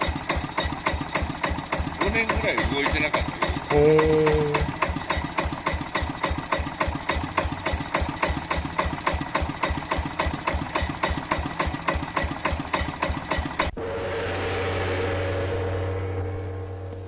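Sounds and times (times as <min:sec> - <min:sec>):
diesel engine knocking: 0:00.0 - 0:13.7.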